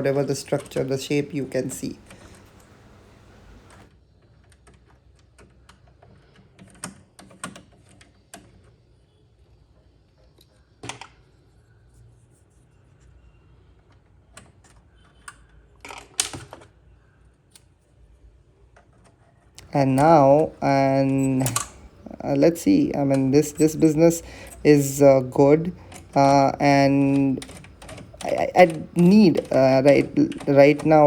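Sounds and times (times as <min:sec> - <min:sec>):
light clicks and taps of tools: 0:23.1 - 0:24.6, 0:25.7 - 0:26.2.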